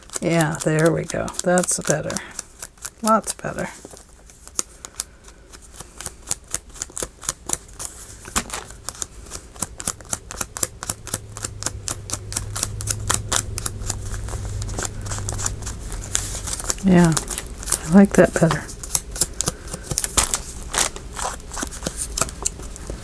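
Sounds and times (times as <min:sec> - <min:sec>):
ink blending tool tapping paper: 0:00.0 - 0:04.7
low steady hum: 0:00.0 - 0:23.0.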